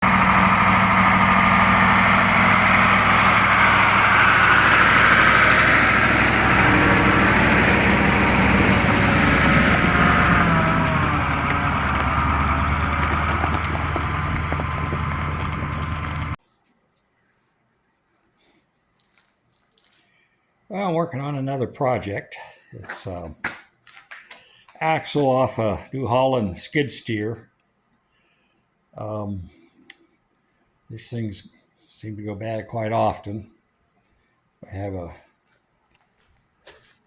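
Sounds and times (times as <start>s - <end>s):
engine running: 0.0s - 16.4s.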